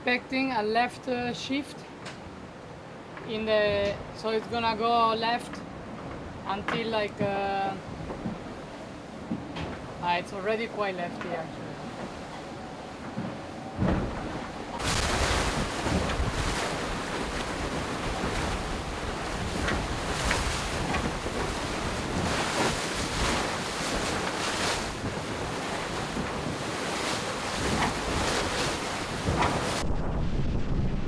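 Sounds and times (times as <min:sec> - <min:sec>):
wind buffeting microphone: 0:11.7 - 0:31.0
water rushing past hull: 0:13.8 - 0:30.0.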